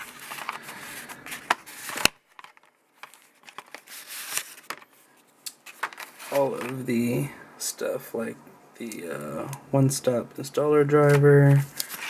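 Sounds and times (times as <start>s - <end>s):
cardboard box rustling: 5.7s - 6.9s.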